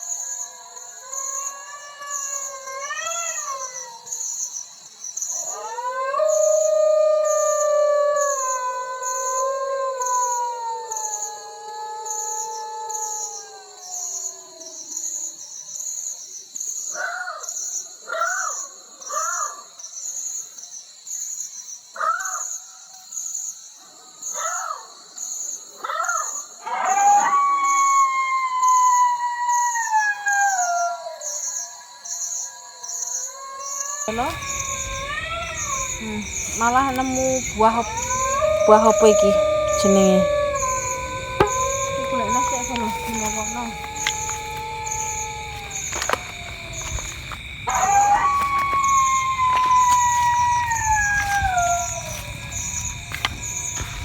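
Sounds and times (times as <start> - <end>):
dog howling: 5.5 - 14.1, 26.7 - 31.0, 33.5 - 54.0
insect chirping: 31.4 - 54.0
dog yelping: 34.1 - 54.0.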